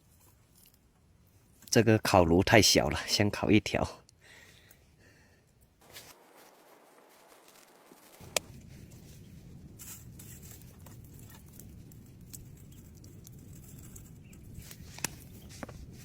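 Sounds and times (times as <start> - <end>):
faint crackles: 5.5 - 16.0
fish grilling rumble: 5.8 - 16.0.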